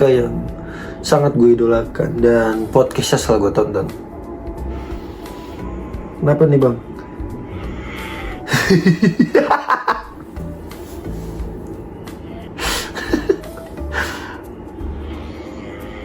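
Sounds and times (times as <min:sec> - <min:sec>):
background music: 0:00.0 - 0:16.0
laughter in pulsing bursts: 0:08.5 - 0:10.3, 0:12.6 - 0:13.7.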